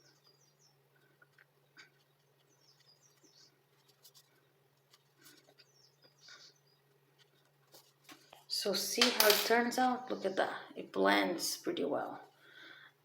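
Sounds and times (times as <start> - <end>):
faint room hum: 0.0 - 13.0
faint high bird chirps: 1.6 - 4.6.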